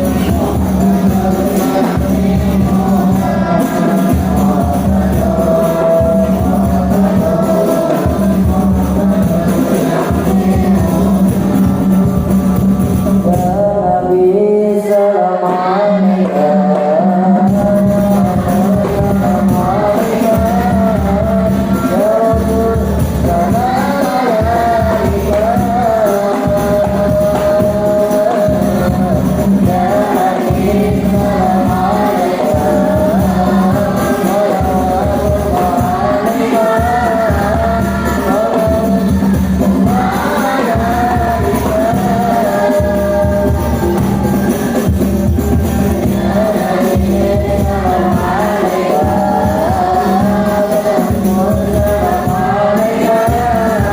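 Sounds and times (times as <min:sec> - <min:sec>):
music with percussion: 0:00.0 - 0:53.9
child singing: 0:15.2 - 0:53.9.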